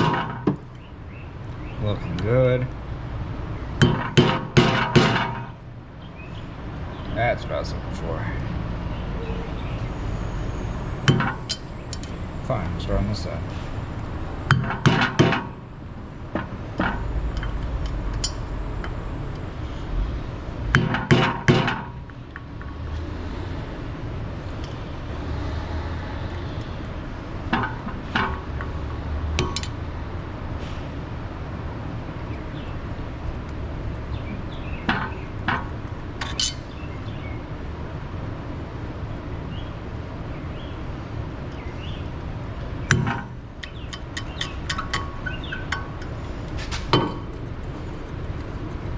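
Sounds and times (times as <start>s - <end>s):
metal tools knocking on wheel hub: 0.0s - 0.9s, 3.8s - 5.6s, 11.0s - 12.2s, 14.5s - 15.7s, 16.3s - 19.0s, 20.7s - 22.8s, 27.5s - 29.8s, 34.3s - 36.9s, 42.9s - 48.9s
steady low hum: 25.9s - 48.9s.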